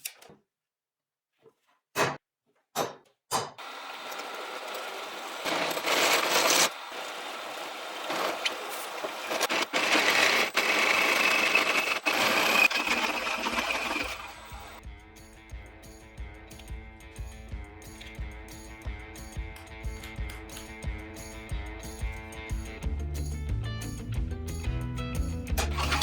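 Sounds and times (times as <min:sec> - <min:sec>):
power tool whining: 0:03.6 - 0:14.8, 0:25.6 - 0:26.0
guitar music: 0:14.8 - 0:26.0.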